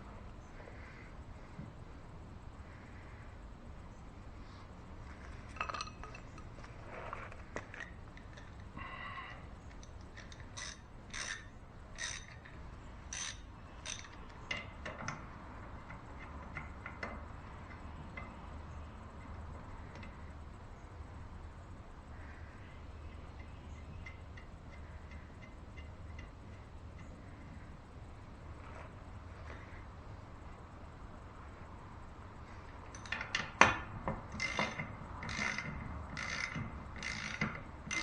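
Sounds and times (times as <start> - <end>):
metal tools clinking and scraping: 5.2 - 15.2.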